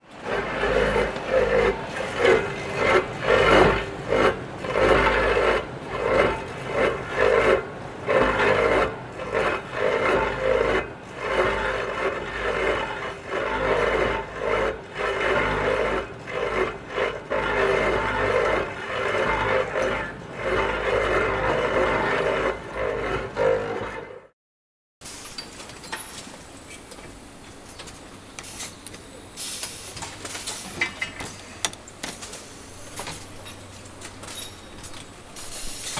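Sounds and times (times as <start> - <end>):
hand tool rasping on surface: 0.2 - 24.3.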